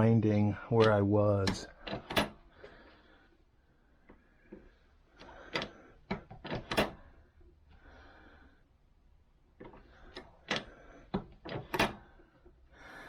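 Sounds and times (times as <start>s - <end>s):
metallic clicks and clunks of press: 0.8s - 2.5s, 5.5s - 7.0s, 9.6s - 12.1s.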